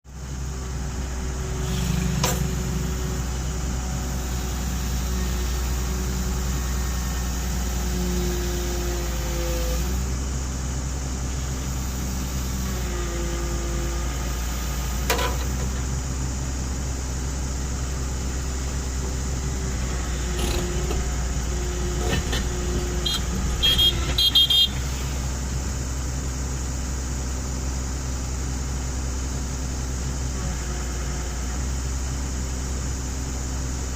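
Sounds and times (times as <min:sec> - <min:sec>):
excavator engine running: 0:00.1 - 0:33.9
hydraulic whine: 0:00.3 - 0:27.0.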